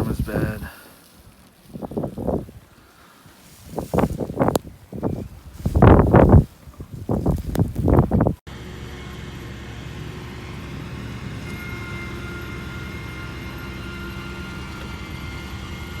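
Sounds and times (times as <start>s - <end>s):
low mechanical hum: 3.6s - 16.0s
faint high whining tones: 8.8s - 16.0s.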